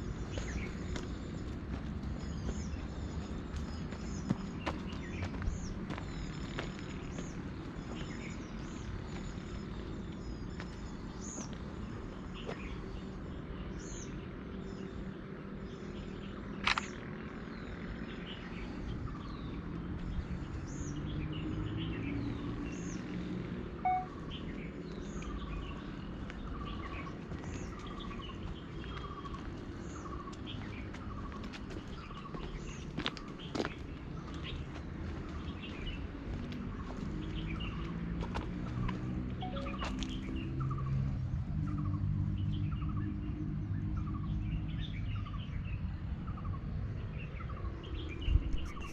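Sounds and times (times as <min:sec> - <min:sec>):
birds chirping: 0:00.0 - 0:45.7, 0:46.3 - 0:48.9
repeated bird call notes: 0:23.8 - 0:24.5, 0:39.4 - 0:40.8.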